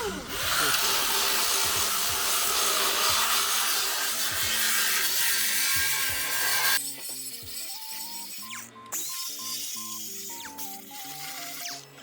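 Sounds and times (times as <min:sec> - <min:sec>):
harsh hiss of metal grinding: 0:00.1 - 0:08.5.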